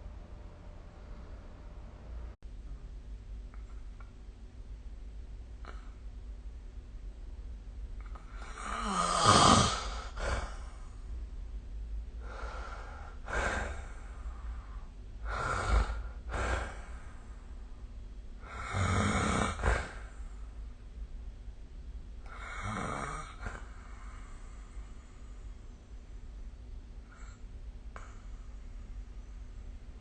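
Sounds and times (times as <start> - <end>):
person snoring: 8.0 - 11.0, 12.2 - 17.2, 18.4 - 20.3, 22.2 - 24.5.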